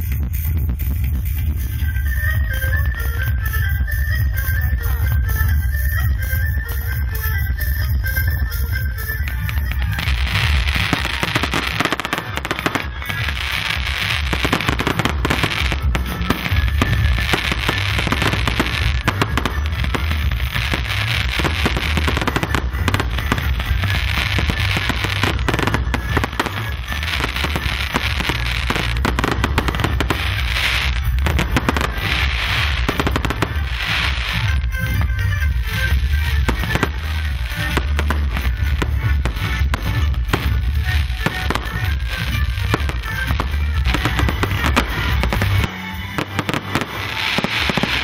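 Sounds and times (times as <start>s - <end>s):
fireworks bangs and crackling: 0.0s - 48.0s
music playing: 0.0s - 48.0s.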